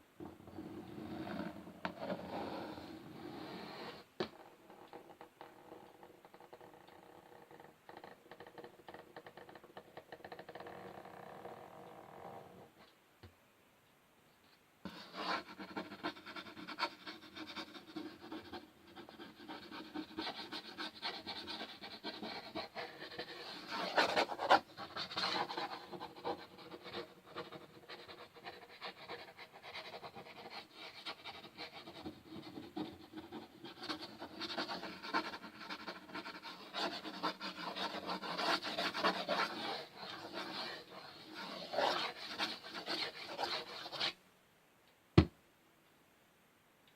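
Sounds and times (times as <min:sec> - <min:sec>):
fingers scratching on wood: 0:14.8 - 0:44.2.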